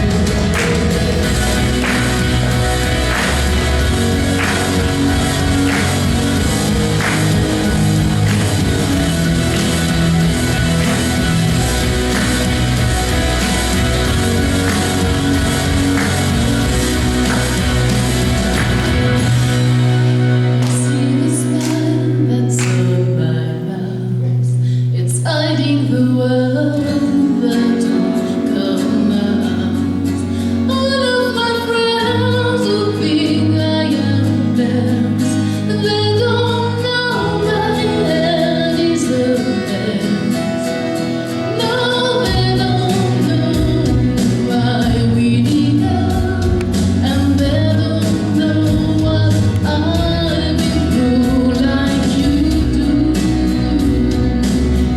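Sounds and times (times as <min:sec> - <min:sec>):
woman singing: 0:00.0 - 0:19.4, 0:20.6 - 0:54.9
instrumental accompaniment: 0:00.0 - 0:24.7.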